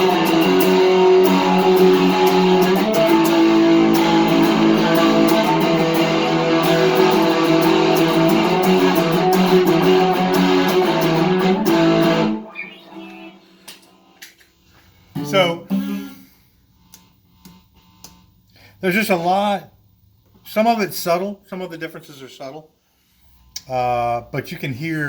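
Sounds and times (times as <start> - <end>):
electric guitar chords: 0.0 - 14.2, 15.2 - 16.3.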